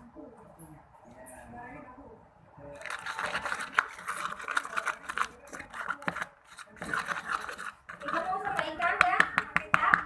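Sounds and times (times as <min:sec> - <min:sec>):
glue stirred in container: 0:02.7 - 0:10.0.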